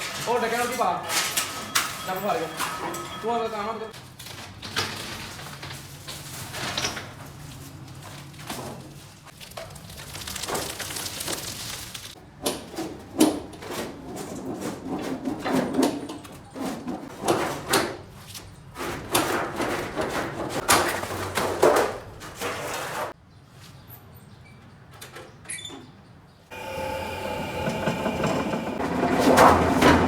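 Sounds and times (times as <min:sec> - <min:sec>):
sheet metal clanking: 0:26.5 - 0:30.0.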